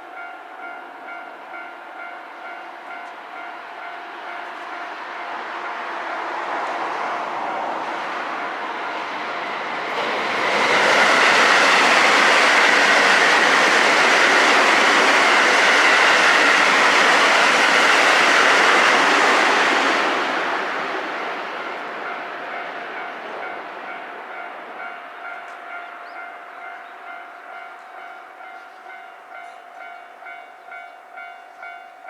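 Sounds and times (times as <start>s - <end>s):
level crossing warning bell: 0.0s - 6.3s, 22.0s - 32.0s
electric train rolling past: 0.0s - 32.0s.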